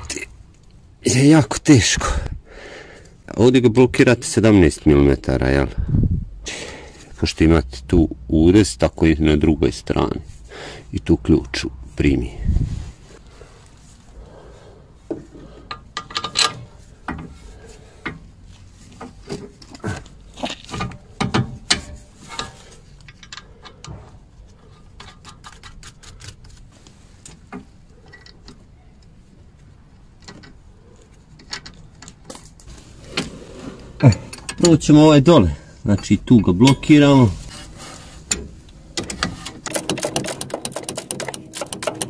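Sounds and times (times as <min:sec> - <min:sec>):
metallic clicks of hand tools: 0:34.0 - 0:34.8, 0:38.3 - 0:42.0.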